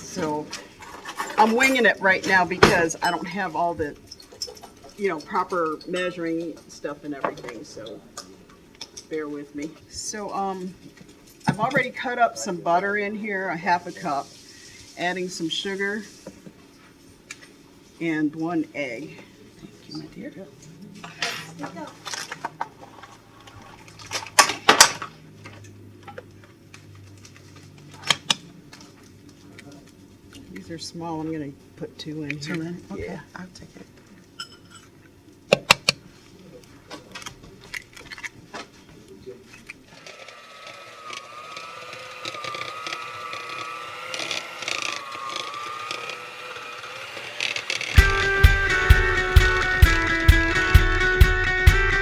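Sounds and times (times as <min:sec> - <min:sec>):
beaters scraping against bowl: 0:00.0 - 0:03.4
electric mixer whine: 0:39.9 - 0:52.0.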